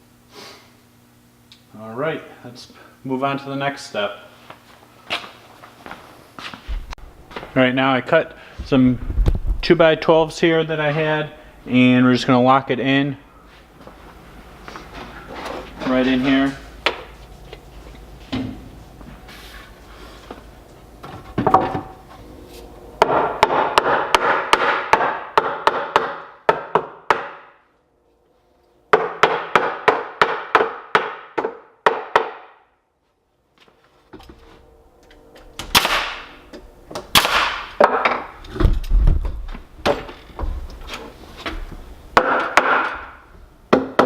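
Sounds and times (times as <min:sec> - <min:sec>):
hammer striking wood: 0:23.0 - 0:27.6, 0:28.9 - 0:32.7, 0:37.1 - 0:38.3, 0:42.2 - 0:44.0.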